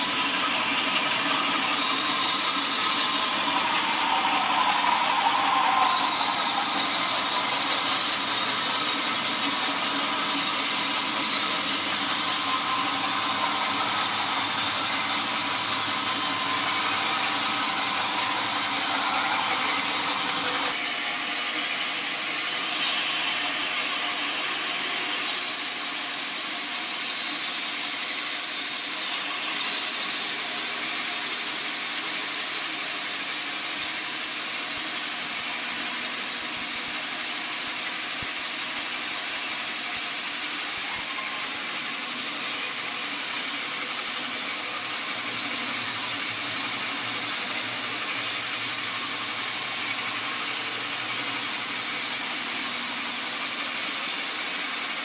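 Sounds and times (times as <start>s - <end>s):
sawmill saw hissing: 0.0s - 55.0s.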